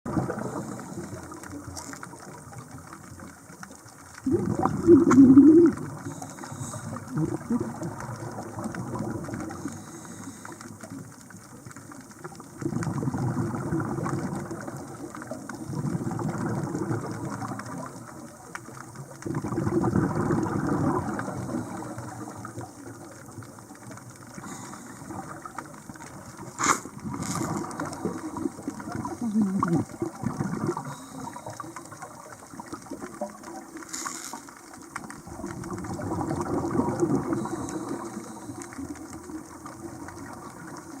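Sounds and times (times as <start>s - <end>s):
exhaled bubbles gushing underwater: 0.1s - 41.0s
steady hiss: 5.0s - 7.8s, 9.4s - 11.1s, 21.0s - 29.9s, 30.6s - 33.0s, 33.7s - 35.2s.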